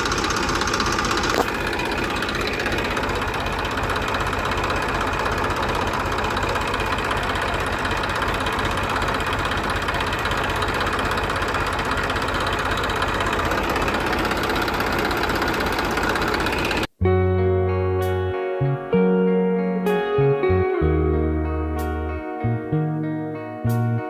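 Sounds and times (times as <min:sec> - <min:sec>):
small engine running: 0:00.0 - 0:16.9.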